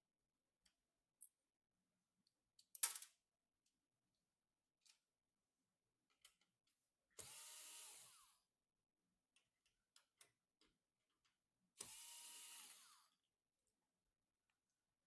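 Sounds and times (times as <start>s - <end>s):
small electric motor running: 7.2s - 8.4s, 11.8s - 13.2s.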